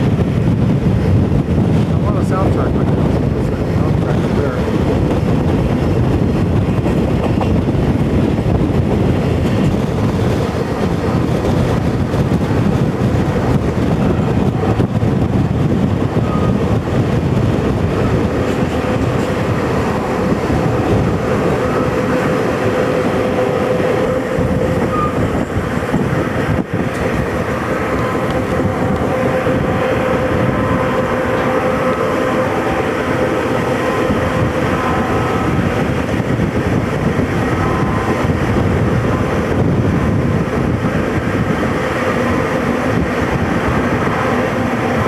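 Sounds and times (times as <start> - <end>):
rushing air: 0.0 - 45.0
train wheels rumbling on rail: 0.0 - 45.0.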